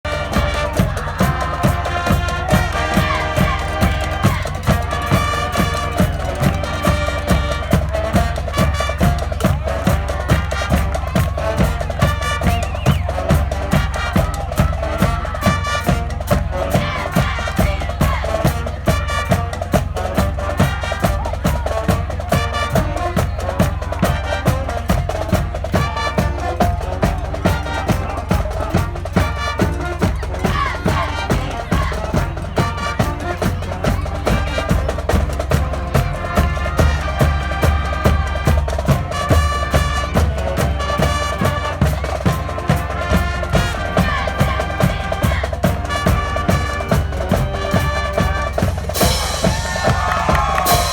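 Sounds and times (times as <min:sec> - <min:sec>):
heavy bass: 0:42.7 - 0:50.9.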